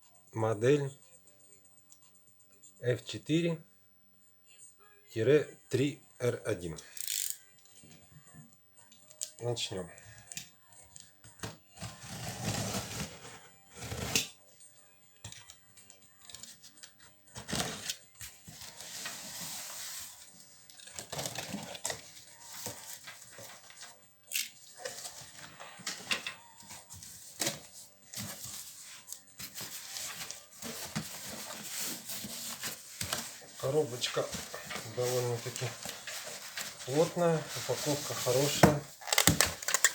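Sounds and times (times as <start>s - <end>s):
cardboard box rustling and scraping: 11.8s - 14.2s, 29.4s - 38.8s.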